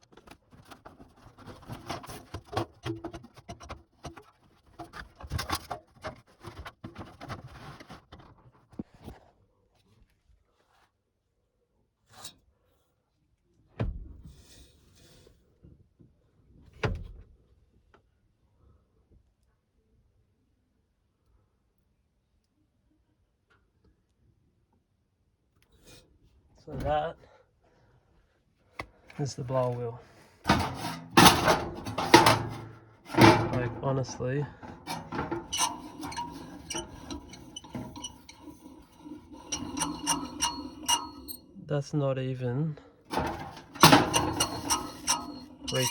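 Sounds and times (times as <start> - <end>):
rustling scrape: 0.0 - 9.2, 30.5 - 41.6, 43.1 - 45.9.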